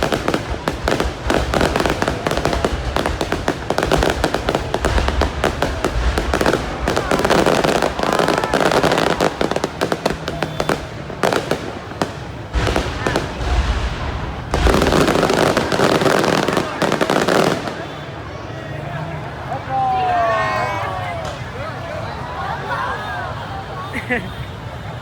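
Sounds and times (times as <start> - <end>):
fireworks booms: 0.0 - 18.3
fireworks crackling and popping: 0.0 - 18.3.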